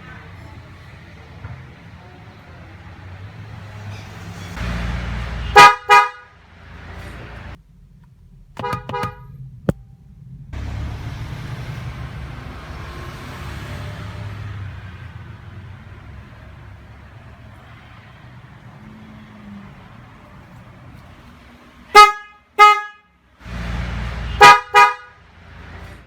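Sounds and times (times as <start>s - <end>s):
car horn toots: 4.5s - 6.4s, 8.6s - 9.4s, 21.9s - 25.2s
low rumble: 6.5s - 13.3s.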